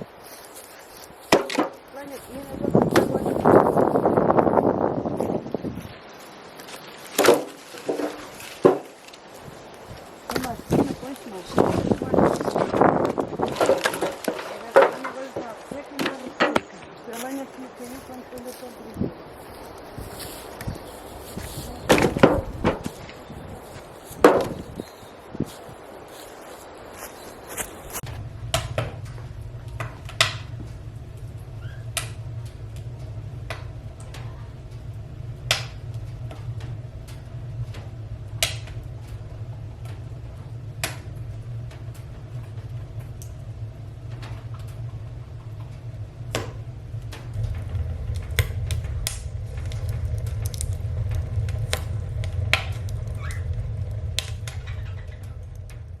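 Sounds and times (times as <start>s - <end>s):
wood knocking and clattering: 1.3s - 1.9s, 7.1s - 9.2s, 10.3s - 16.9s, 24.2s - 24.7s
small engine idling: 27.0s - 56.0s.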